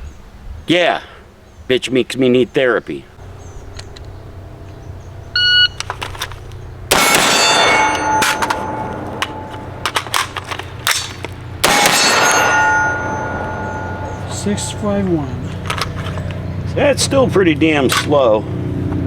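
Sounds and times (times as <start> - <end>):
shot timer beep: 5.4 - 5.8
rifle shots ringing: 6.9 - 16.0.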